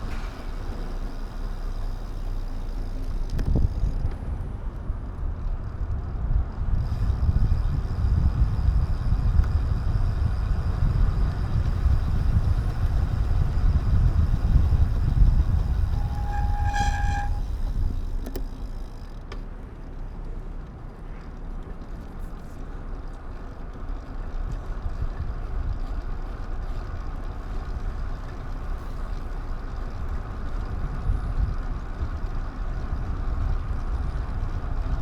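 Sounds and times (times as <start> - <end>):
wind rumble on microphone: 0.0 - 19.0, 23.9 - 35.0
short horn-like tone: 12.2 - 18.4.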